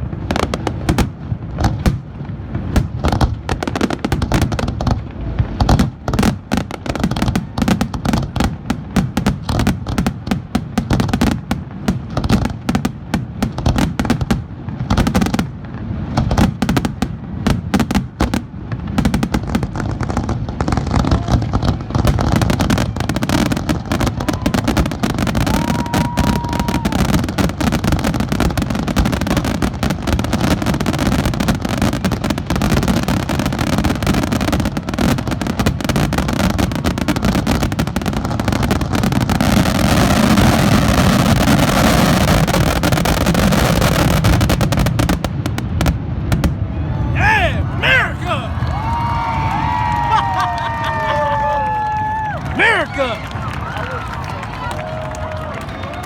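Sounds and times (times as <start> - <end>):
fireworks booms and crackles: 0.0 - 53.8.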